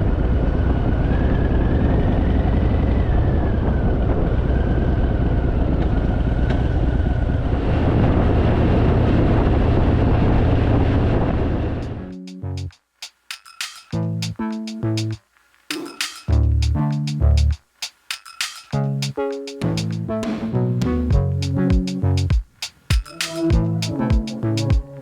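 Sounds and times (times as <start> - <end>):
wind rush on microphone: 0.0 - 12.0.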